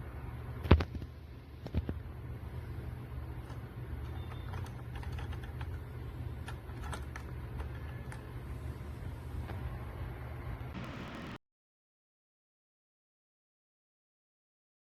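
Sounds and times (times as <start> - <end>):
low hum: 8.5 - 11.4.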